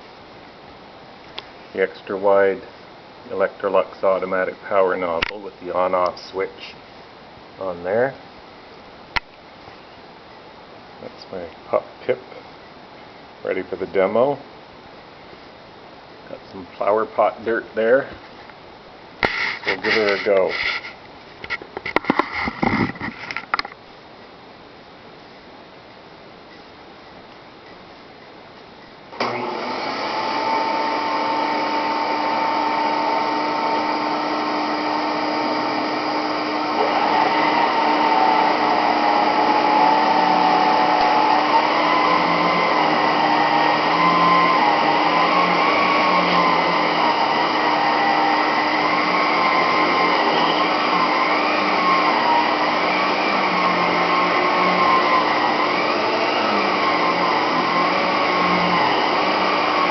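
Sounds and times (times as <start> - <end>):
vacuum cleaner motor whine: 19.6 - 20.6, 29.1 - 59.9.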